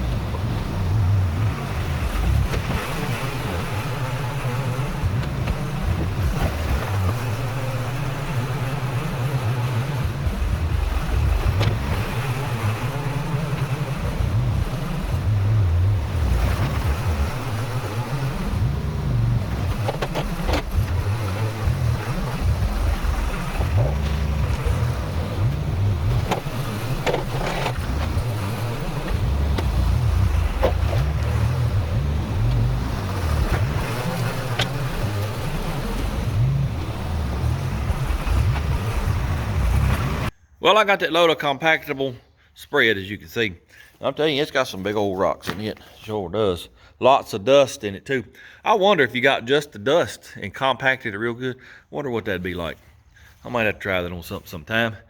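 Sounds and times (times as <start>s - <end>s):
tractor engine running: 0.0s - 40.4s.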